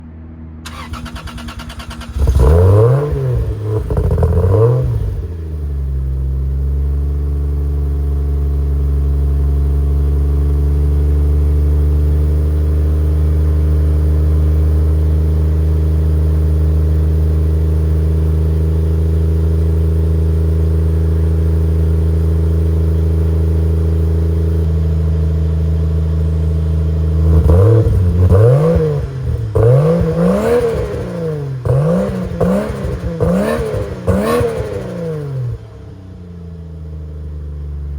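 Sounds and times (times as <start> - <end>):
car engine revving and idling: 0.7 - 37.9.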